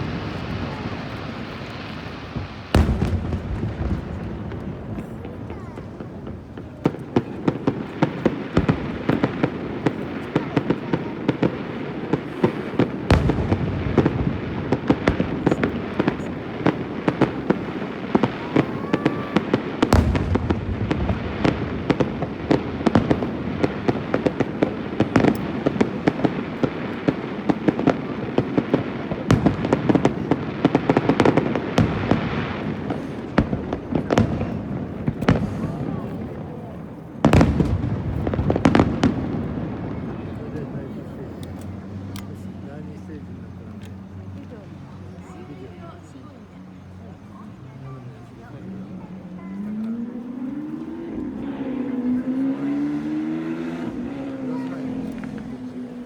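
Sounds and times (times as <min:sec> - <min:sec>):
heavy firework booms: 0:00.0 - 0:43.4
fireworks bangs and crackles: 0:00.0 - 0:56.0.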